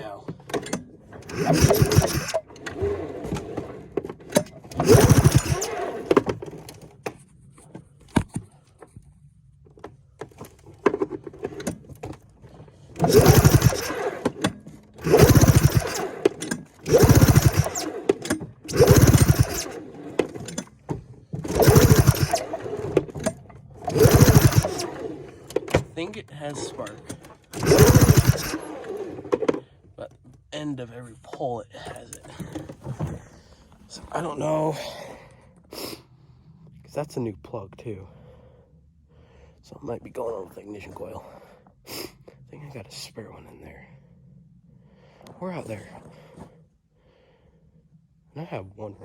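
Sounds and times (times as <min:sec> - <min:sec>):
engine cranked by pull cord: 0:00.0 - 0:07.2, 0:10.2 - 0:29.7.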